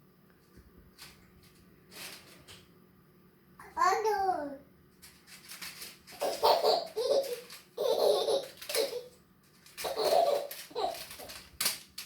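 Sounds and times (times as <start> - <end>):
baby laughing: 6.1 - 9.2, 9.8 - 11.3.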